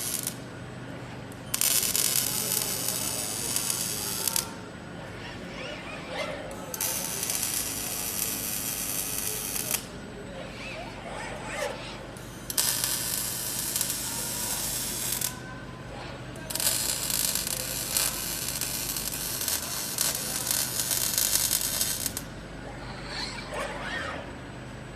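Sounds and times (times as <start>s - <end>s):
arc welding crackling hiss: 0.0s - 0.4s, 1.6s - 4.5s, 6.8s - 9.9s, 12.5s - 15.3s, 16.5s - 22.2s
steady low hum: 0.0s - 24.9s.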